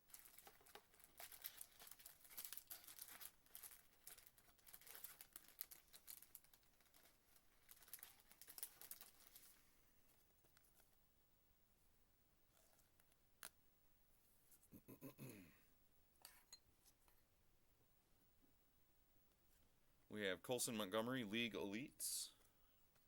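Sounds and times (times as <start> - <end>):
foil wrapper crinkling and tearing: 0.0 - 9.6.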